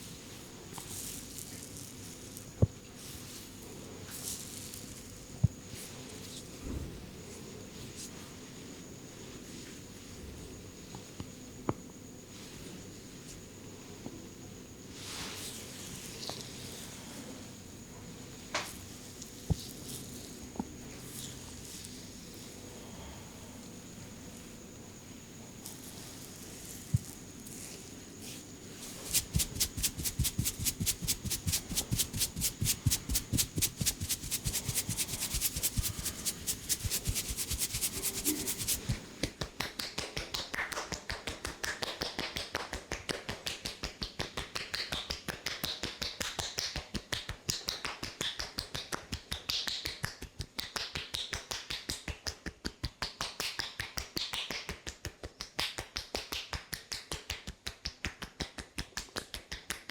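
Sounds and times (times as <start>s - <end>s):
hands striking body rapidly: 29.1s - 39.0s.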